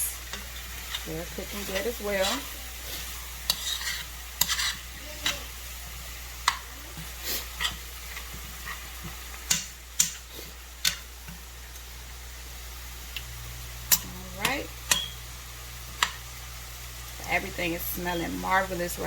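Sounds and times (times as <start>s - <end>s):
utensil scraping a pan: 0.0s - 5.6s, 6.4s - 11.0s
food sizzling in frying pans: 0.0s - 19.0s.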